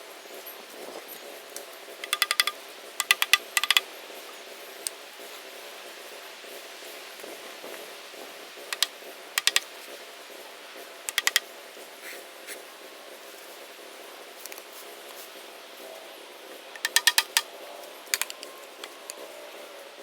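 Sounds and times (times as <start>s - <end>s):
sharp clicks: 2.0s - 3.9s, 8.8s - 9.7s, 11.1s - 11.4s, 16.8s - 17.5s.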